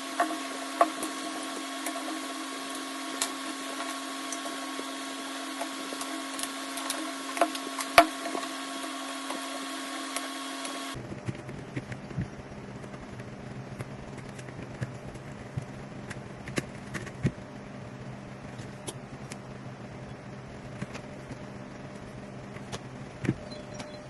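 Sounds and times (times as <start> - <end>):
small motor running: 0.0 - 11.0
low hum: 0.0 - 24.0.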